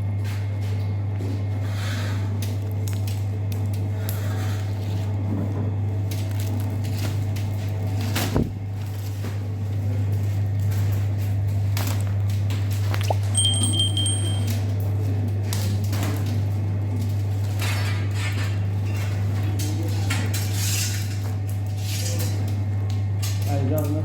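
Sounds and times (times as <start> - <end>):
steady low hum: 0.0 - 14.6.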